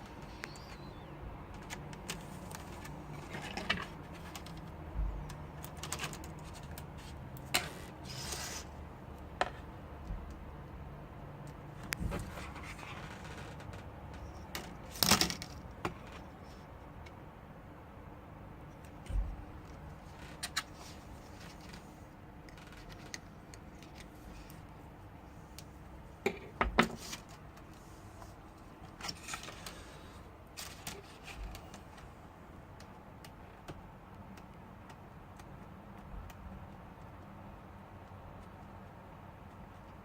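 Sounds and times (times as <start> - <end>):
faint steady hum: 0.0 - 40.0
hands handling laptop parts: 0.1 - 8.5.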